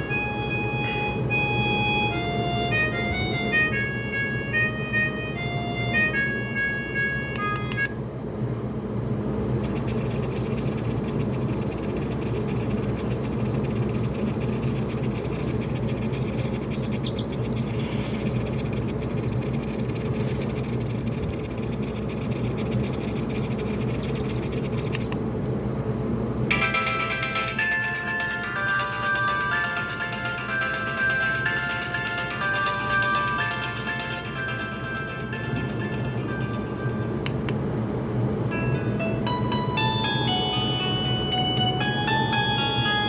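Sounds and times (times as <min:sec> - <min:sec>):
melodic ringtone: 0:00.0 - 0:07.9, 0:26.5 - 0:37.3, 0:38.5 - 0:43.0
bird chirp ringtone: 0:00.0 - 0:08.0, 0:09.6 - 0:25.2, 0:26.5 - 0:37.3, 0:38.5 - 0:43.0
steady low hum: 0:00.0 - 0:43.0.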